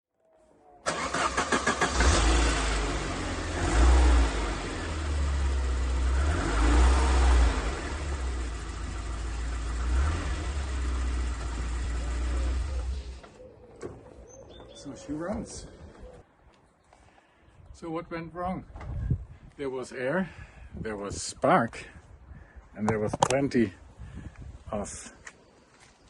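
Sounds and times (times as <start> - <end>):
car engine starting and revving: 0.8 - 13.4.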